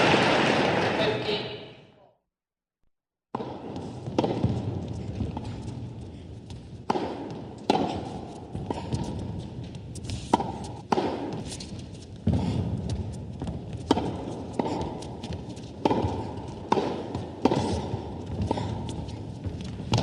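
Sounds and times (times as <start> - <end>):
tennis ball struck by rackets: 3.4 - 5.8, 6.5 - 20.0
ball bouncing on court: 3.4 - 20.0.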